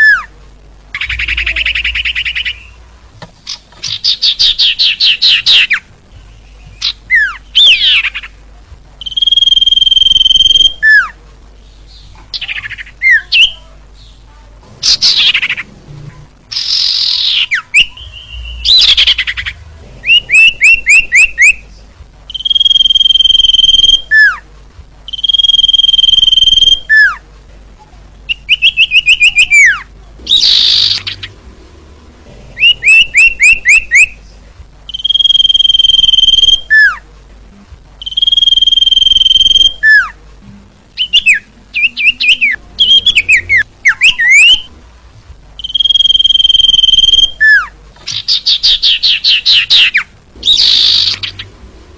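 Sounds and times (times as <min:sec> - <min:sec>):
bird chirps: 0:00.9 - 0:02.8, 0:09.0 - 0:11.1, 0:16.5 - 0:21.7, 0:22.3 - 0:24.4, 0:25.1 - 0:27.2, 0:28.3 - 0:31.4, 0:32.6 - 0:34.3, 0:34.9 - 0:37.0, 0:38.0 - 0:40.1, 0:41.0 - 0:44.7, 0:45.6 - 0:51.5
high bird whistle: 0:09.0 - 0:11.0, 0:22.3 - 0:24.3, 0:25.1 - 0:27.1, 0:34.9 - 0:36.9, 0:38.0 - 0:40.0, 0:45.6 - 0:47.7, 0:48.4 - 0:51.4.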